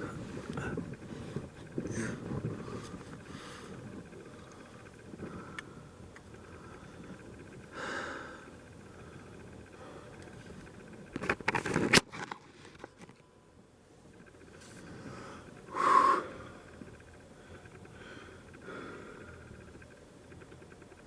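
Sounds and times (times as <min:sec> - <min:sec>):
person breathing: 0:00.4 - 0:10.3, 0:14.8 - 0:19.7.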